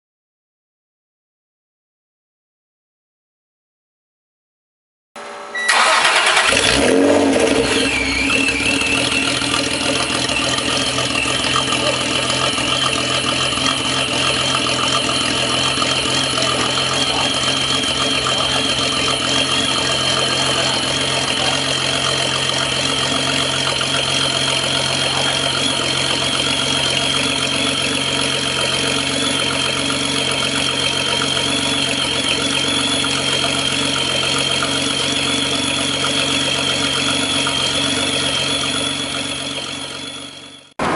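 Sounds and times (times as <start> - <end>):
car engine starting and idling: 5.2 - 40.9
high whine: 6.5 - 40.9.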